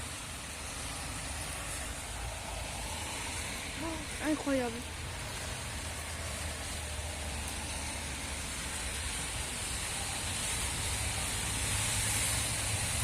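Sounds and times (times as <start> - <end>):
heavy rain pouring: 0.0 - 13.0
strong wind rumble: 0.0 - 13.0.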